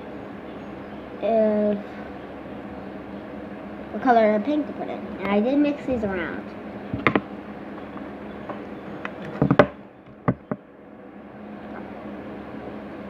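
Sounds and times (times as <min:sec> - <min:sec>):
steady low hum: 0:00.0 - 0:13.0
sharp knocks and taps: 0:06.9 - 0:07.3, 0:07.9 - 0:10.6.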